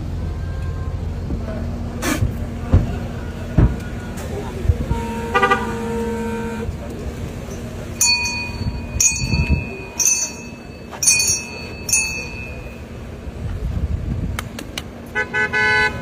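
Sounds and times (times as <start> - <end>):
traffic rumble: 0.0 - 16.0
vehicle horns tooting: 0.2 - 1.2, 4.8 - 6.9, 15.1 - 16.0
fuller-toned horn: 4.8 - 6.9, 15.1 - 16.0.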